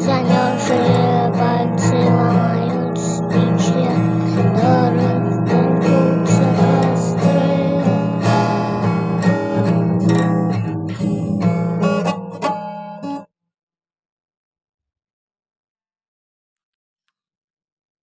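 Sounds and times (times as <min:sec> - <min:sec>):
strummed acoustic guitar music: 0:00.0 - 0:13.3.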